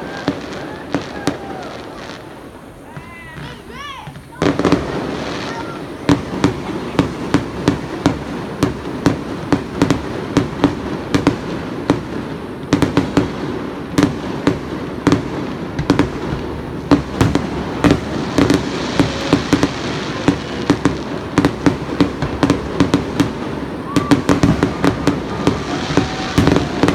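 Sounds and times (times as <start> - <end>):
fireworks bangs: 0.0 - 26.9.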